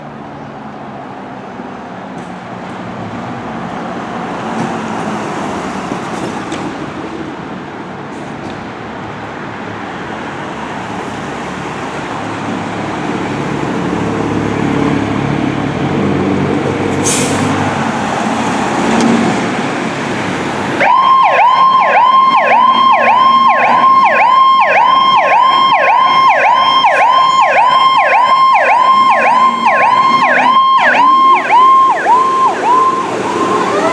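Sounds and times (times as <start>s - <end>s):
fire engine approaching: 0.0s - 33.9s
electronic siren yelping: 20.8s - 33.9s.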